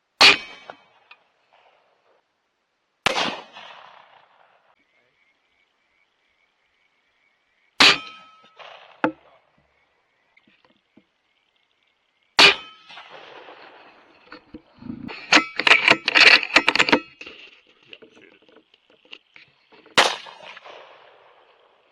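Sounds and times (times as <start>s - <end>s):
rifle shots: 3.0s - 4.7s, 12.4s - 14.2s, 20.0s - 21.9s
metallic clanks and knocks: 14.1s - 20.0s.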